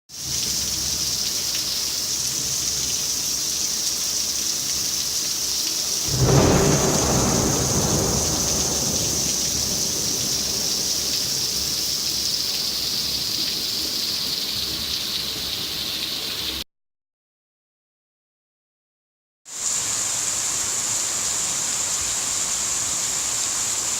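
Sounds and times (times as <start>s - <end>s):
rain falling: 0.1s - 16.6s, 19.6s - 23.9s
thunder rumbling: 6.0s - 13.0s.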